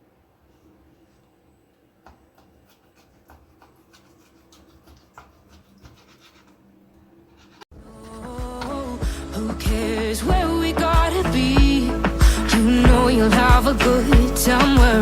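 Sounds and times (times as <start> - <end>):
knife slicing on chopping board: 2.1 - 6.6.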